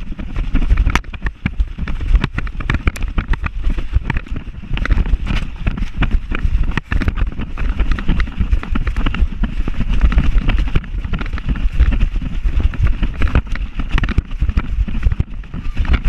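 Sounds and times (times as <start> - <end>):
jolts and knocks from running: 0.0 - 16.0
wind rumbling on microphone: 0.0 - 16.0.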